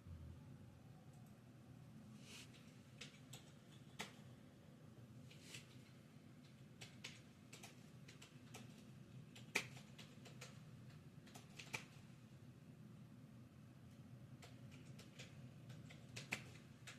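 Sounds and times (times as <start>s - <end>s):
low steady hum: 0.0s - 16.9s
small clicks and taps: 2.5s - 4.3s, 5.4s - 12.0s, 13.9s - 16.9s.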